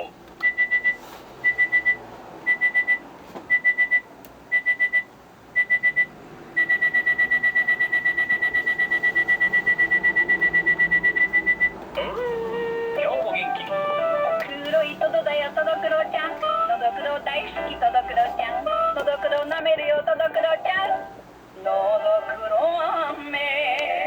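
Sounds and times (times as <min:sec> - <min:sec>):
alarm clock beeping: 0:05.6 - 0:11.8.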